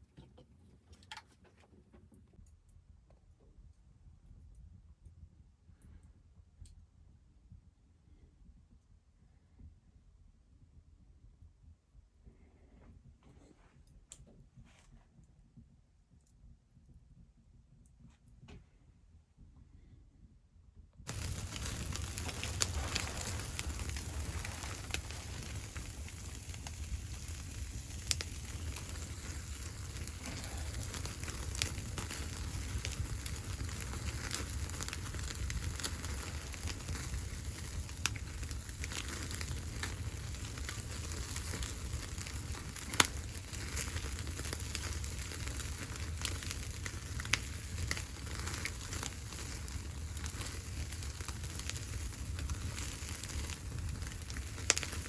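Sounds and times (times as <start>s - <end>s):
wood fire crackling: 0.0s - 2.6s, 21.1s - 55.0s
steady low rumble: 20.8s - 55.0s
sharp fire pops: 21.1s - 55.0s.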